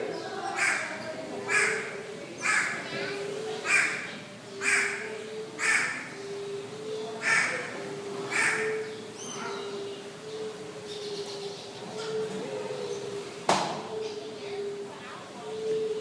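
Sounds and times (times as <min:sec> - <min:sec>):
bird cawing: 0:00.5 - 0:02.9, 0:03.6 - 0:06.3, 0:07.2 - 0:09.9.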